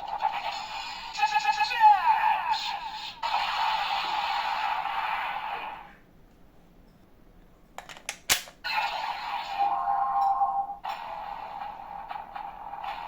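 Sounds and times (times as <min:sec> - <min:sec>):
sharp plastic clicks: 0:07.8 - 0:08.6.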